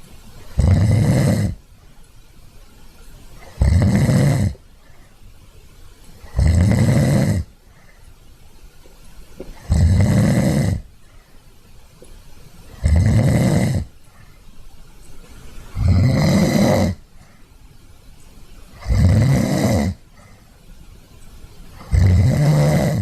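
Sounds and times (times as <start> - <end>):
cat snoring: 0.6 - 1.6, 3.4 - 4.6, 6.2 - 7.5, 9.6 - 10.9, 12.8 - 14.0, 15.8 - 17.0, 18.8 - 20.0, 21.8 - 23.0.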